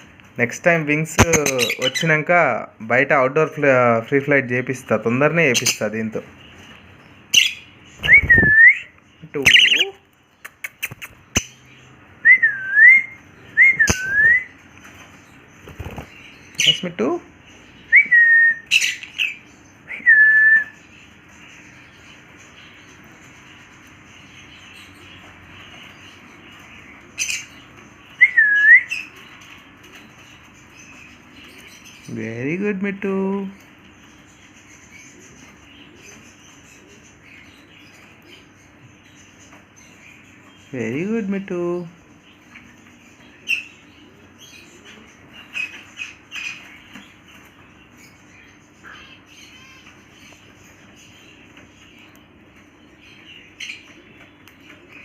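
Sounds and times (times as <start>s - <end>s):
parrot chirp: 1.2s - 2.2s, 6.5s - 12.2s, 17.6s - 19.9s
parrot squawking: 1.2s - 2.2s, 7.3s - 8.6s, 9.3s - 11.6s
parrot chatter: 1.2s - 2.3s, 9.3s - 11.6s, 43.3s - 55.0s.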